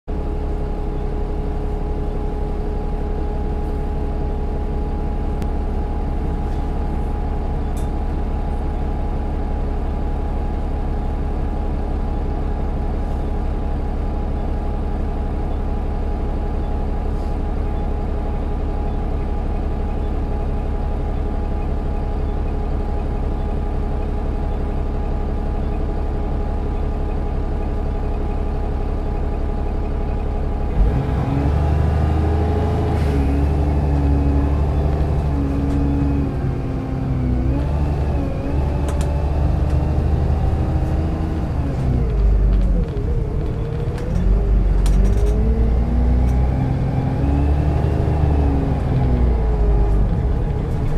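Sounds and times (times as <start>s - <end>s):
large vehicle engine rumbling: 0.1s - 50.9s.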